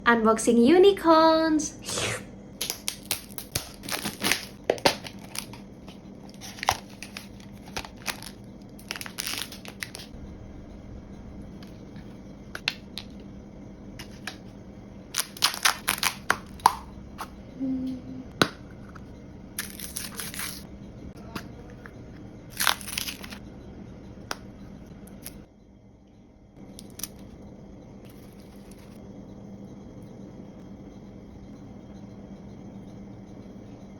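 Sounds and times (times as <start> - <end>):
wrapping crinkling and tearing: 2.6 - 5.6, 6.2 - 10.1, 15.1 - 16.6, 19.6 - 20.6, 22.5 - 23.4.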